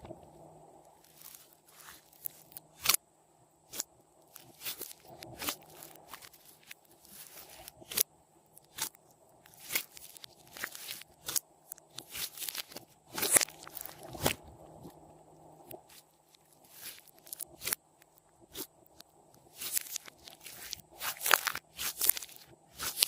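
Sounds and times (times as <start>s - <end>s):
slime sticky pops and crackles: 18.5s - 23.0s.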